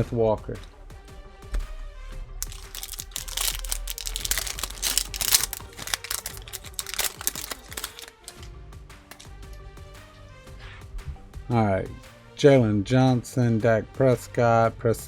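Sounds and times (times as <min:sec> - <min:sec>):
plastic wrapper tearing and crinkling: 0:02.4 - 0:08.5.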